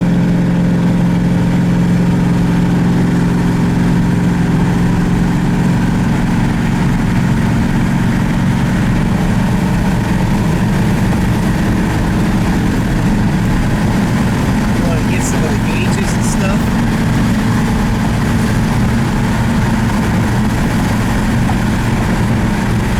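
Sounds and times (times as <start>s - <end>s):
vehicle engine humming: 0.0s - 22.9s.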